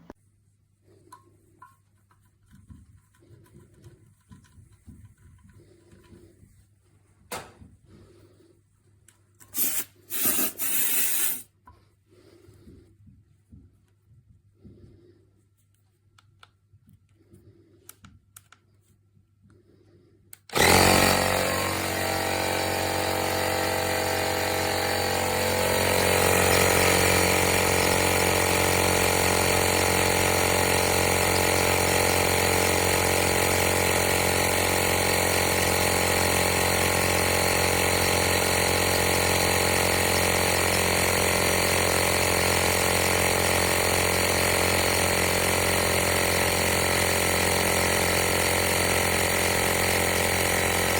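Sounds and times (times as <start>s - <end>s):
air compressor running: 9.4s - 11.5s, 20.5s - 50.9s.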